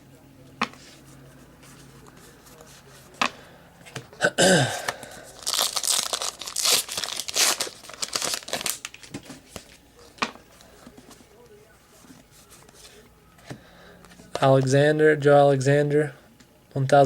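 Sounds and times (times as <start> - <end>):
card pack wrapper tearing and crinkling: 4.8 - 9.2.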